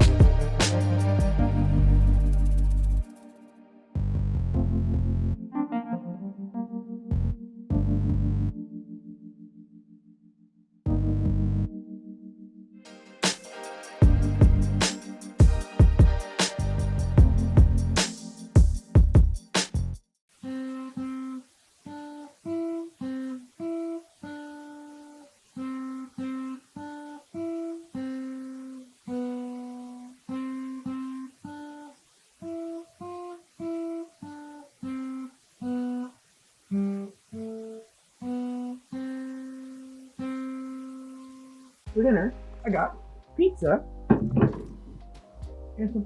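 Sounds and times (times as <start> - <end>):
guitar picking slow melody: 0.0 - 3.9, 10.9 - 18.9, 20.4 - 41.7.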